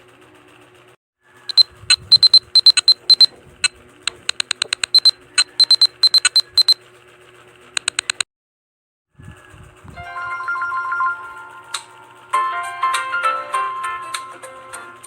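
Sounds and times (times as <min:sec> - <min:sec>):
high-pitched ringtone beeps: 0:01.5 - 0:03.3, 0:04.3 - 0:06.8.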